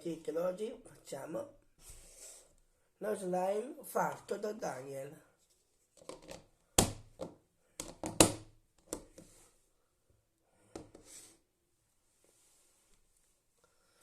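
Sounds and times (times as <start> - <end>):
knocks and clicks of slime: 6.0 - 9.2.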